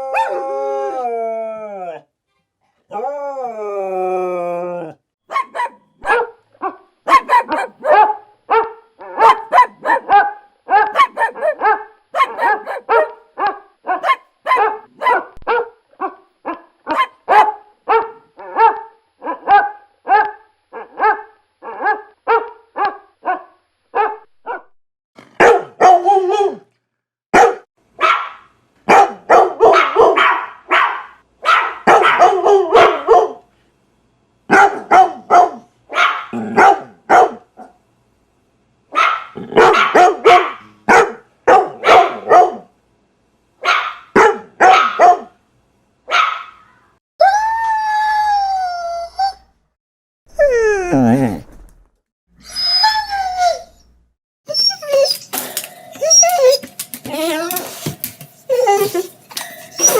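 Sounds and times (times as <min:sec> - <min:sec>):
dog barking: 0:05.3 - 0:24.8, 0:25.4 - 0:26.6, 0:27.3 - 0:33.5, 0:34.5 - 0:37.8, 0:38.9 - 0:42.7, 0:43.6 - 0:45.4, 0:46.1 - 0:46.8, 0:58.6 - 0:59.9.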